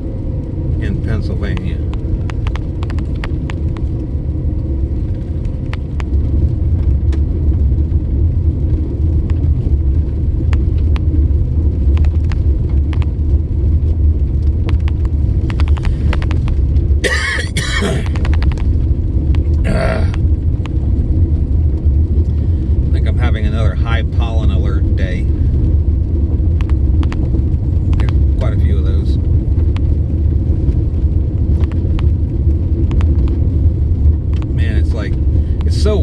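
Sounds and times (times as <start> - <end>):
car road rumble from inside: 0.0 - 36.0
light ticks: 1.5 - 3.9, 11.9 - 13.1, 14.4 - 16.6, 26.6 - 27.2, 27.9 - 28.2, 32.8 - 33.4
person coughing: 17.0 - 18.2.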